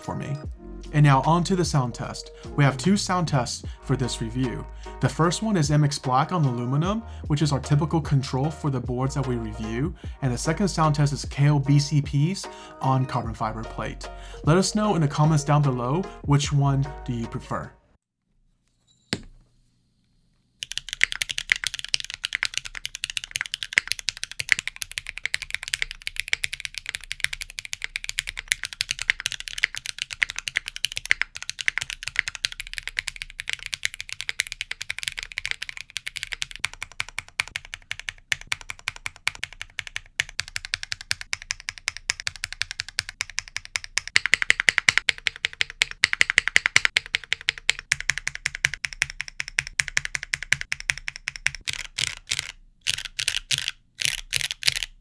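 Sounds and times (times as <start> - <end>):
mechanical keyboard typing: 20.6 - 55.0.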